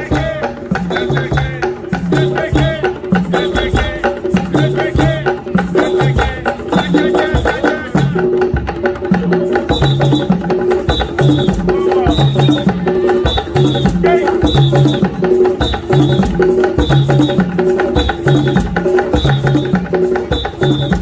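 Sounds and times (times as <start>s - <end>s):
rhythmic music with percussion: 0.0s - 21.0s.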